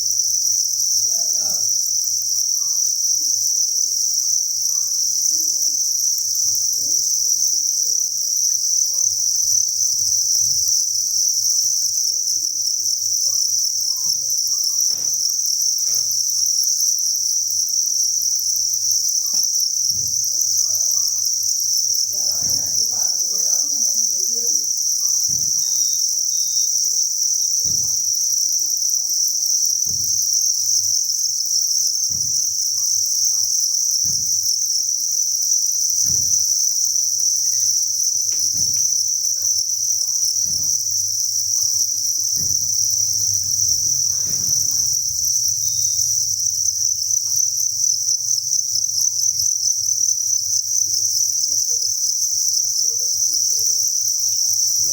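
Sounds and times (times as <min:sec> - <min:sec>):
crickets chirping: 0:00.0 - 0:54.9
faint knocks: 0:19.3 - 0:26.5, 0:27.5 - 0:29.1, 0:29.7 - 0:30.6, 0:32.0 - 0:33.1, 0:36.0 - 0:46.3.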